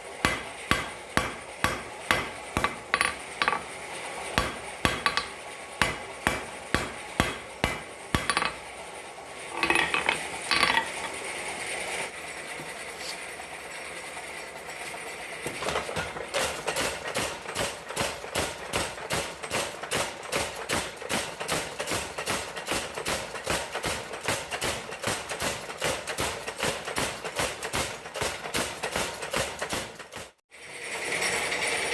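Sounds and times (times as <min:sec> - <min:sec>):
hammer striking steel on anvil: 0:00.0 - 0:08.8
ringing metallic clinking: 0:09.5 - 0:11.2.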